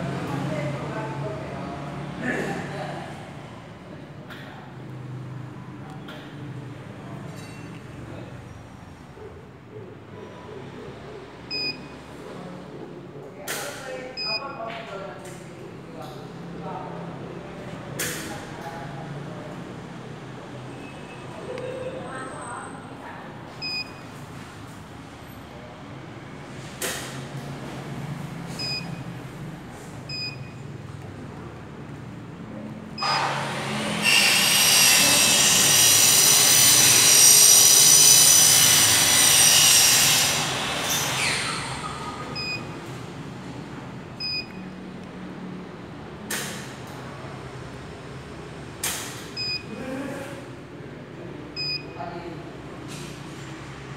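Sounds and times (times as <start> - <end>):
short high beeps: 11.5 - 12.0, 23.6 - 24.1, 28.5 - 29.0, 42.4 - 42.8, 44.2 - 44.7, 49.4 - 49.8, 51.6 - 52.0.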